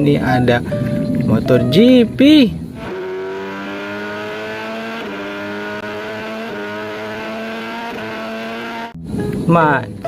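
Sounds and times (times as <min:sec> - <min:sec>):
racing motorcycle engine revving: 0:02.8 - 0:09.0.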